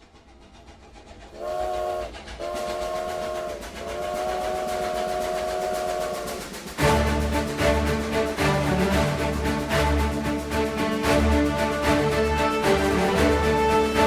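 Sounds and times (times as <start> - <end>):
train rumbling: 0.0 - 14.0
train horn blasts: 1.4 - 7.6, 11.2 - 14.0.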